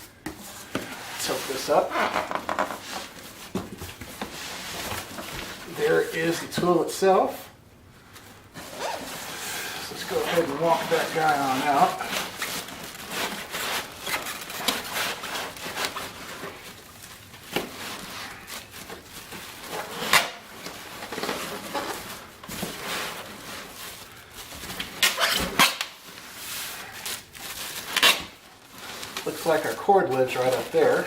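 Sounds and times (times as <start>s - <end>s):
cardboard box rustling and scraping: 17.6s - 31.0s.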